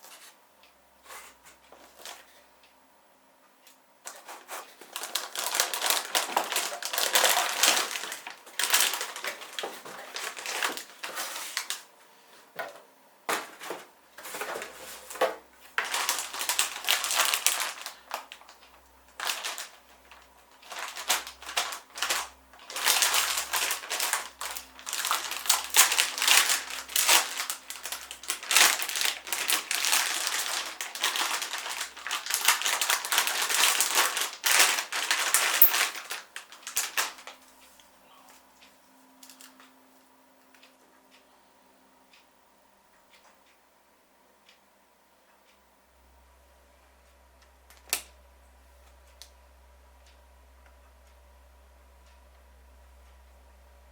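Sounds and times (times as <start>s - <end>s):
packaging crinkling: 4.1s - 11.9s, 15.8s - 37.4s.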